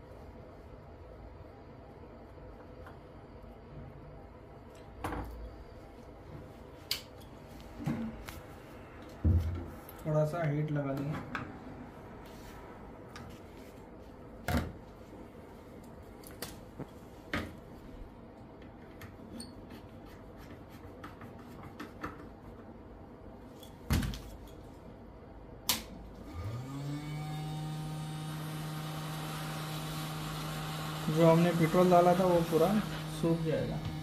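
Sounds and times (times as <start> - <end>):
hot air blower humming: 26.2 - 34.0.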